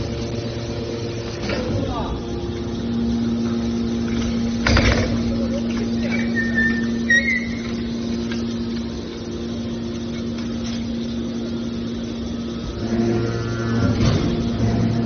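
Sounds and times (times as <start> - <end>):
hydraulic power unit humming: 0.0 - 15.0
high squeals: 5.6 - 8.1.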